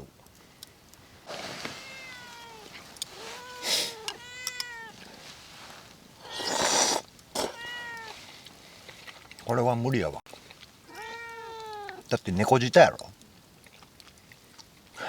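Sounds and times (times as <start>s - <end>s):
cat meowing: 1.7s - 5.1s, 7.4s - 8.2s, 10.9s - 12.1s.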